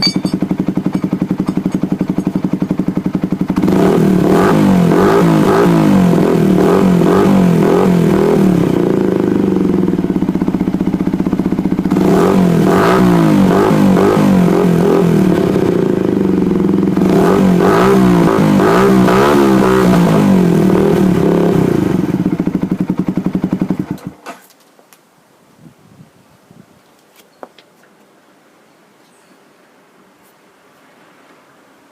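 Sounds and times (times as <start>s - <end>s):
engine running down to a stop: 0.0s - 24.2s
motorcycle engine idling and revving: 0.0s - 24.2s.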